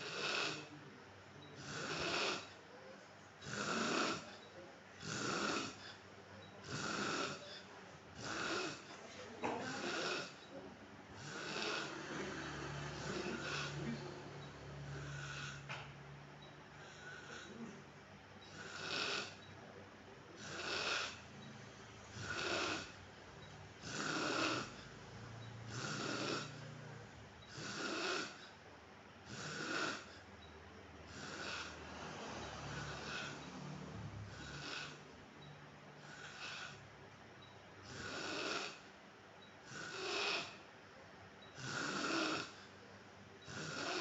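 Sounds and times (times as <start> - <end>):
man snoring: 0.0 - 0.8, 1.6 - 2.6, 3.4 - 4.4, 5.0 - 6.0, 6.6 - 9.0, 9.6 - 10.5, 11.2 - 15.8, 16.8 - 17.8, 18.5 - 19.5, 20.4 - 21.3, 22.1 - 23.0, 23.8 - 26.9, 27.5 - 28.6, 29.2 - 30.3, 31.0 - 35.1, 36.0 - 36.9, 37.8 - 38.9, 39.6 - 40.7, 41.6 - 42.7, 43.4 - 44.0.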